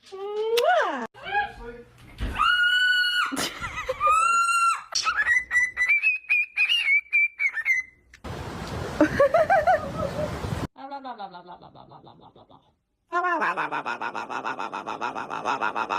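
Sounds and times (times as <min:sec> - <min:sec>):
pet bird whistling: 0:05.0 - 0:08.0.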